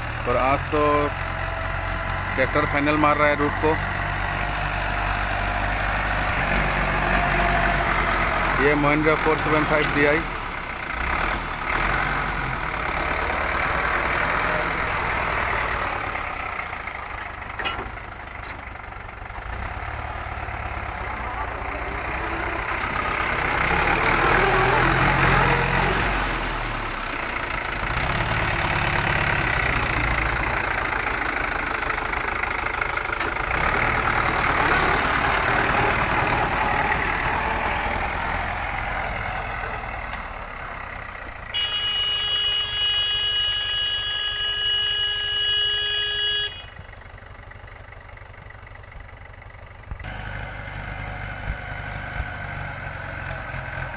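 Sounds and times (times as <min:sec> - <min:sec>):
tractor diesel engine running: 0:00.0 - 0:53.9.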